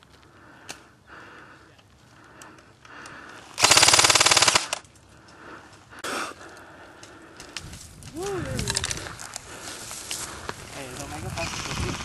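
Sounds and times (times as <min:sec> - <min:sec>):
airsoft gun full-auto burst: 0:03.6 - 0:04.8, 0:11.4 - 0:12.0.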